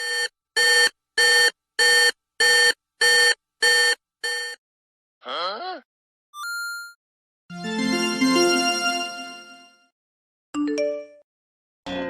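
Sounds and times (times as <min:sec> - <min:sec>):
electronic telephone ringing: 0:00.0 - 0:04.6.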